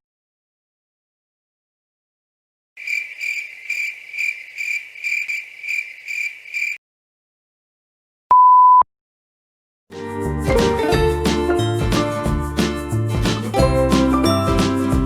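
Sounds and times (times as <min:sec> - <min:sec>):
cricket chirping: 0:02.8 - 0:06.8
single-pitch beep: 0:08.3 - 0:08.9.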